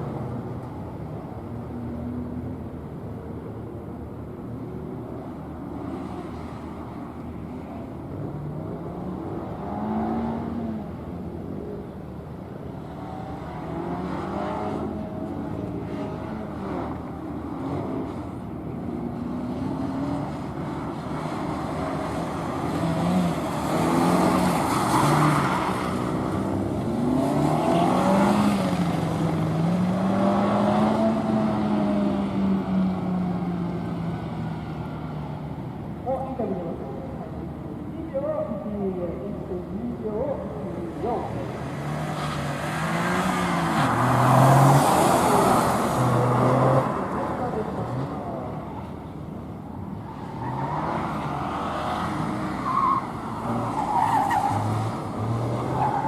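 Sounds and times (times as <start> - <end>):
car engine revving: 12.8 - 35.1.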